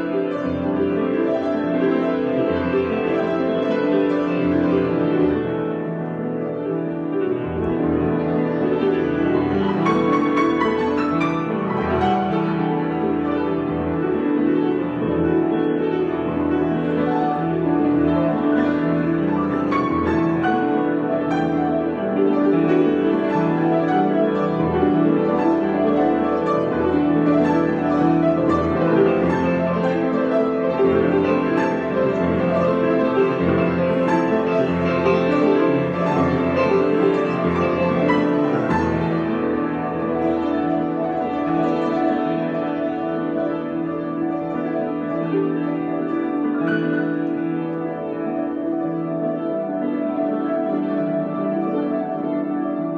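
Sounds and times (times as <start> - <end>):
solo piano keyboard music: 0.0 - 52.9.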